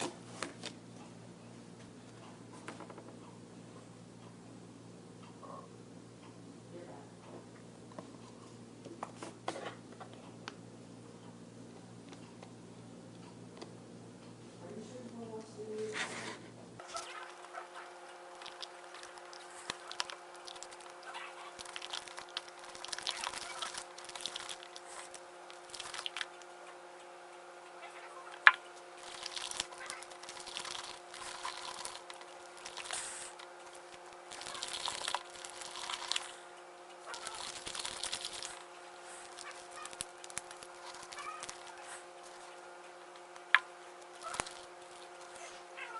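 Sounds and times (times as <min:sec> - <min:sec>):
slime squelching and scraping: 0:16.1 - 0:26.4, 0:29.0 - 0:36.4.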